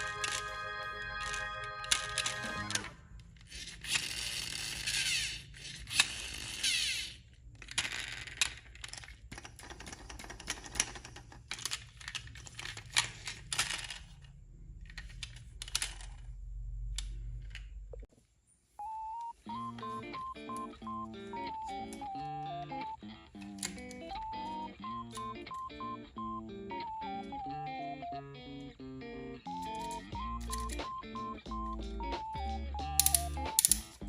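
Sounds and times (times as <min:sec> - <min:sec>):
motor and gear whirring: 0:01.4 - 0:07.2
plastic and metal clicks: 0:33.0 - 0:34.0.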